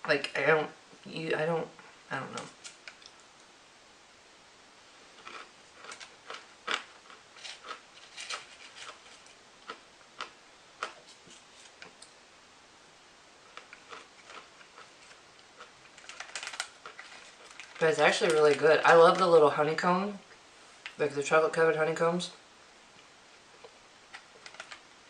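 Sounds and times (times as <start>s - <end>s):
crisp chewing crunches: 5.2s - 11.0s, 13.4s - 18.6s.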